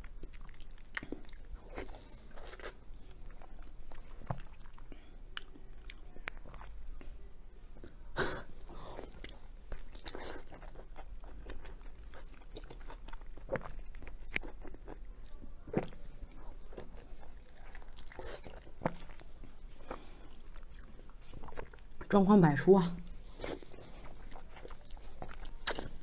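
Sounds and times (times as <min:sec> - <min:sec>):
person chewing sausage: 0:00.0 - 0:07.0, 0:08.7 - 0:22.1, 0:23.1 - 0:26.0
wet mouth clicks: 0:25.6 - 0:25.9.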